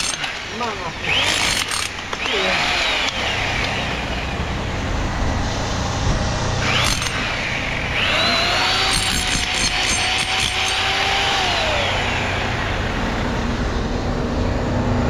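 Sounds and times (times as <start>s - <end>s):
high machine whine: 0.0s - 15.0s
low engine rumble: 2.0s - 8.9s, 11.1s - 15.0s.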